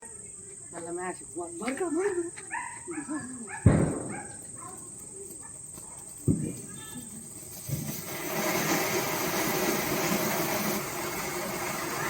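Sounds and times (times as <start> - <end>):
firecracker bang: 3.6 - 4.6, 6.2 - 12.0.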